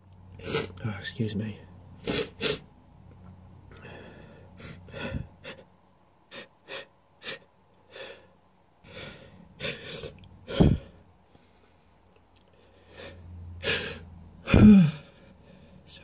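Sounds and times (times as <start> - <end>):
sharp gasping breaths: 2.0 - 2.7, 3.7 - 5.7, 6.3 - 15.9
loud sneeze: 14.5 - 15.0.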